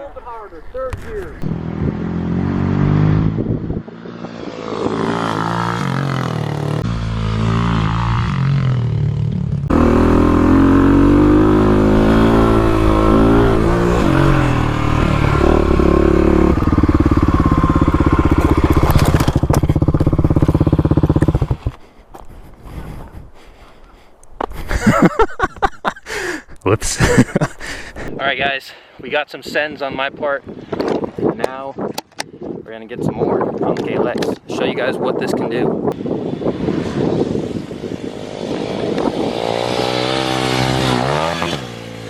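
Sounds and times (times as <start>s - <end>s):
dirt bike engine accelerating: 1.4s - 21.9s, 35.9s - 42.0s.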